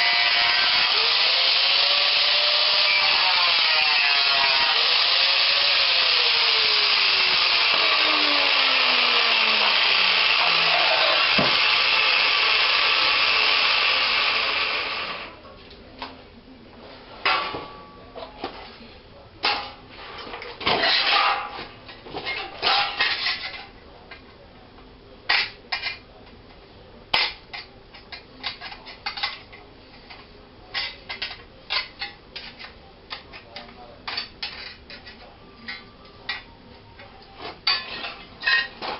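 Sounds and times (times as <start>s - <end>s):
power tool sanding: 0.0s - 15.0s.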